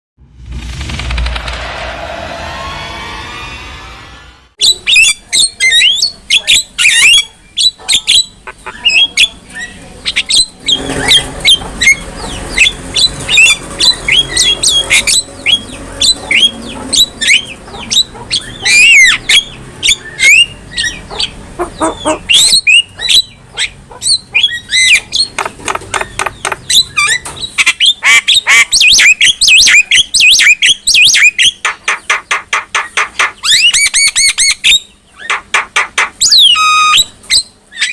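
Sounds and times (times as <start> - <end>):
myna squawks and whistles: 36.3 - 37.2.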